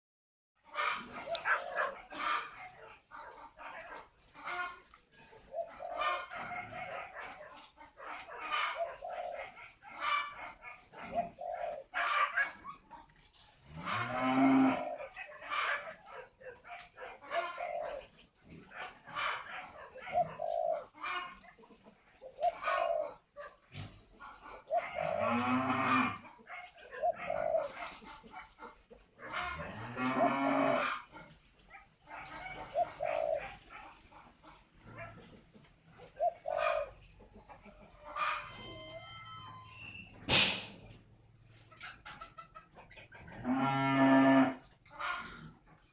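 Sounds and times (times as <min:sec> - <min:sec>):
deep drawn-out animal calls: 0:00.6 - 0:16.3, 0:17.2 - 0:27.8, 0:29.2 - 0:31.4, 0:41.7 - 0:45.9
doves cooing: 0:00.7 - 0:45.9.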